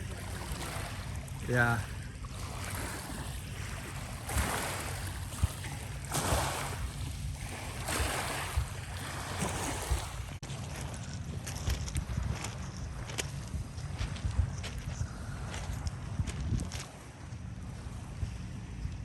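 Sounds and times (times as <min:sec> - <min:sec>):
waves washing against shore: 0:00.0 - 0:10.9
wind rumble on microphone: 0:00.0 - 0:19.0.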